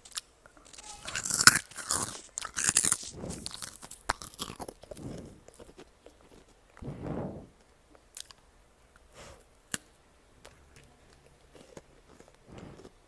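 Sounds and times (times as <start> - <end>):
crunching of crisp snack: 0.0 - 6.8, 10.5 - 13.0.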